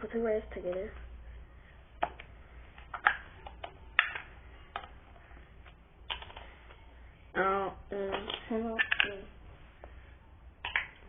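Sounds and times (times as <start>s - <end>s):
plastic containers clicking and tapping: 2.0s - 5.0s, 8.1s - 9.2s, 10.6s - 11.0s.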